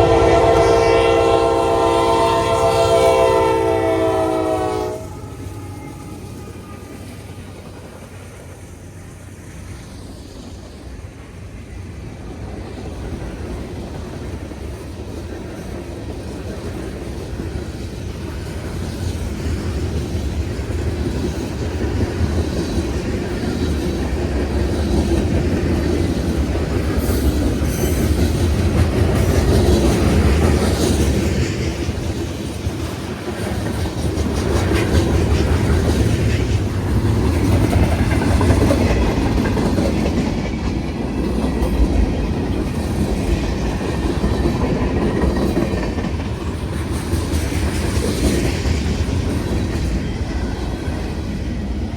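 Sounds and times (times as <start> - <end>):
freight train rumble: 0.0 - 51.9
train wheels clacking over rail joints: 9.8 - 51.9.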